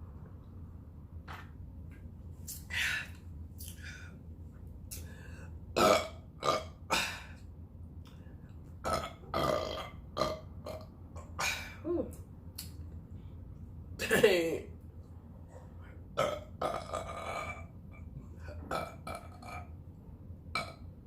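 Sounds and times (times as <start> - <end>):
person burping: 5.8 - 7.4, 8.8 - 12.0, 16.2 - 17.7, 18.4 - 19.7, 20.6 - 20.8.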